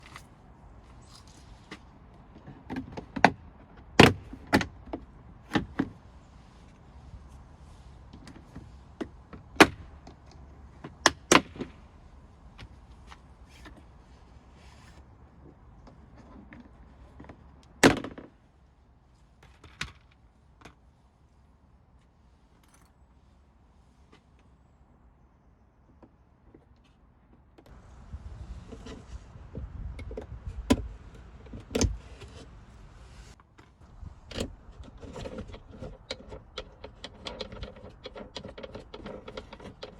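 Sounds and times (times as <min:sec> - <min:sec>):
sharp clicks and knocks: 0:33.3 - 0:39.9.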